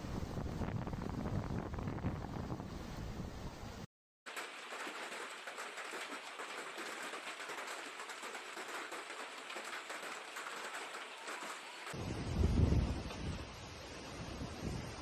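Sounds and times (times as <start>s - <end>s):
heavy rain falling: 4.3s - 15.0s.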